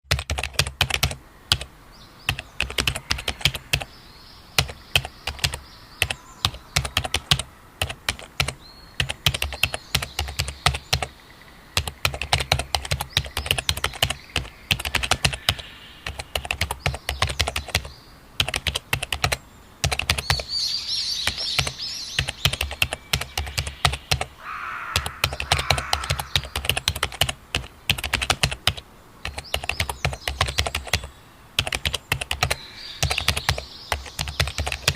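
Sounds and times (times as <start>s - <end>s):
computer keyboard typing: 0.1s - 1.7s, 2.3s - 3.9s, 4.6s - 11.1s, 11.8s - 20.5s, 21.2s - 34.9s
birds chirping: 0.5s - 34.9s.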